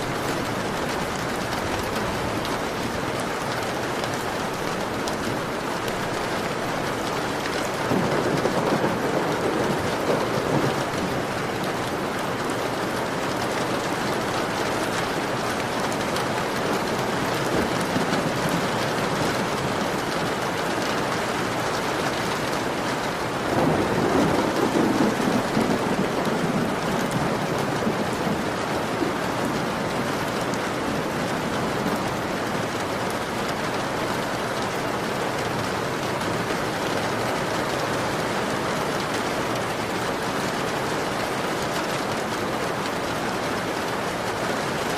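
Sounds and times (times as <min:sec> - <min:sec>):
heavy rain on a window: 0:00.0 - 0:44.9
thunder rumbling: 0:07.3 - 0:11.9, 0:16.7 - 0:20.6, 0:23.0 - 0:33.3.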